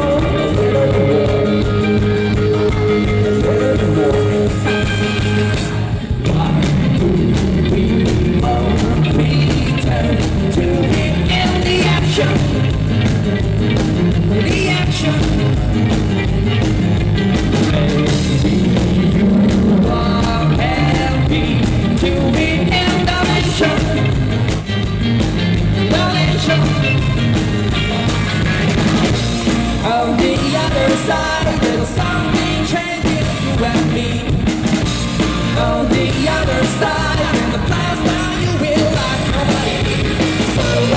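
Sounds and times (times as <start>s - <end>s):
person singing: 0.0s - 12.8s, 17.6s - 24.5s, 25.8s - 27.4s, 29.8s - 34.6s, 35.2s - 40.9s
rock band playing live: 0.0s - 40.9s.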